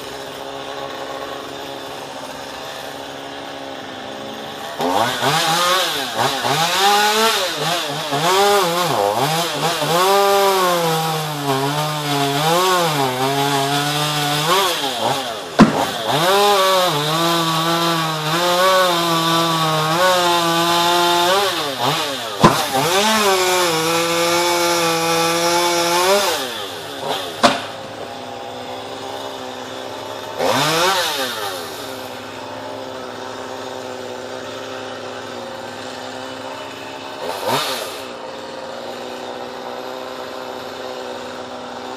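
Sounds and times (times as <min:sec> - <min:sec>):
chainsaw cutting wood: 0:00.0 - 0:41.9
sharp wood cracks: 0:11.6 - 0:32.3.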